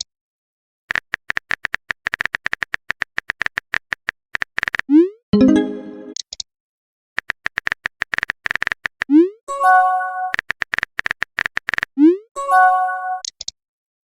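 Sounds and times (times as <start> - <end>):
rising message sent blip: 5.0 - 6.2
notification chime: 5.4 - 6.2.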